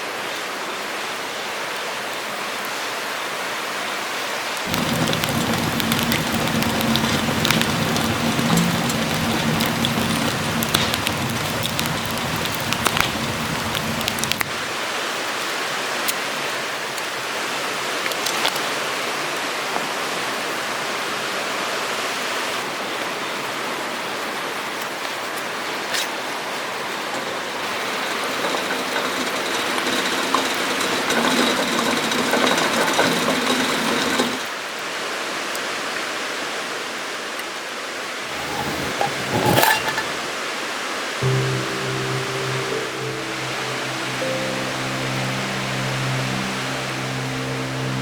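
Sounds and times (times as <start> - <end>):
campfire crackling and popping: 4.7 - 14.7.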